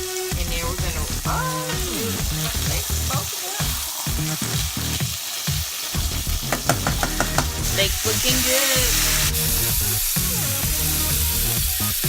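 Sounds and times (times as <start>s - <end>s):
steaks sizzling in a pot: 0.0s - 12.0s.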